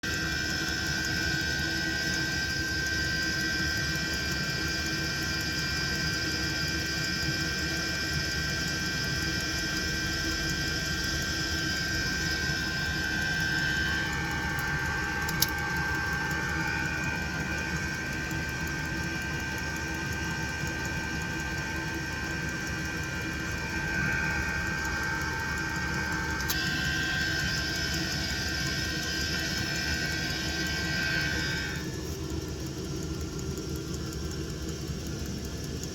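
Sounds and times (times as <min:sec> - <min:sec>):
heater combustion roar: 0:00.0 - 0:35.9
blower high whine: 0:07.4 - 0:35.9.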